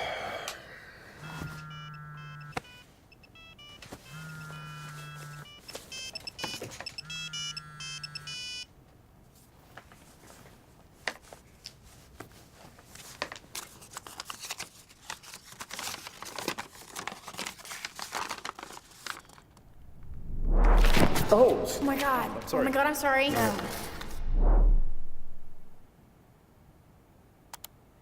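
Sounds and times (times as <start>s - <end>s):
electronic alarm tone pulsing: 1.2s - 8.6s.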